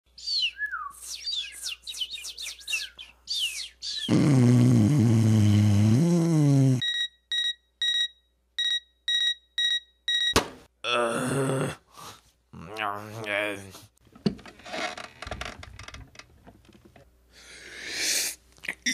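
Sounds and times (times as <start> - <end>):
alarm clock beeping: 6.8 - 10.4
man groaning: 10.8 - 11.9.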